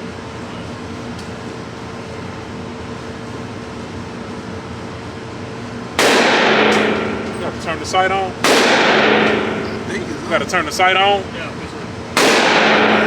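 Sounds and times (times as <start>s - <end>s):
ventilation hum: 0.0s - 13.0s
loud gunshot echoing: 6.0s - 7.3s, 8.4s - 9.6s, 12.2s - 13.0s.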